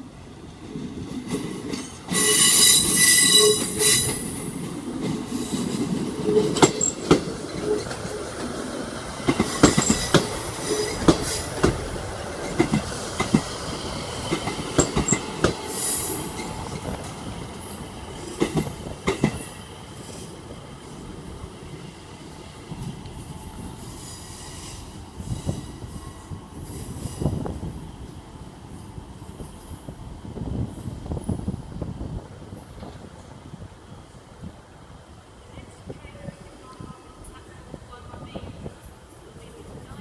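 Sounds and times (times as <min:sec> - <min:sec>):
train wheels clacking over joints: 0:01.0 - 0:17.2, 0:18.2 - 0:19.6
train wheel squeal: 0:01.3 - 0:04.6, 0:05.3 - 0:08.4, 0:09.4 - 0:11.5.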